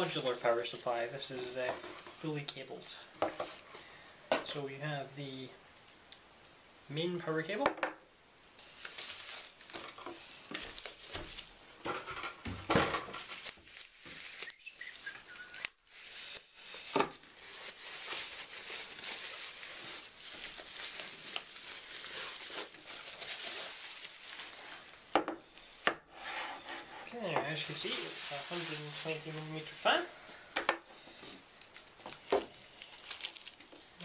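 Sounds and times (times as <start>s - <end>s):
packaging crinkling: 0.0s - 1.3s, 8.6s - 11.7s, 13.1s - 25.9s, 27.1s - 29.8s, 31.4s - 34.0s.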